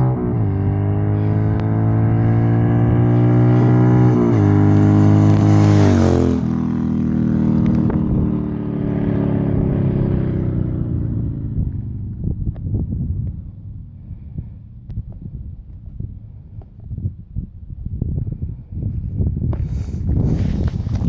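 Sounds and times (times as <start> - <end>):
motorcycle passing by: 0.0 - 12.4.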